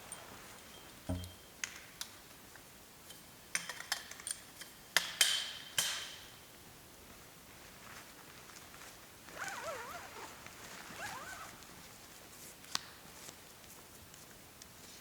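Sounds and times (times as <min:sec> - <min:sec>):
dull thump: 0:01.1 - 0:01.4.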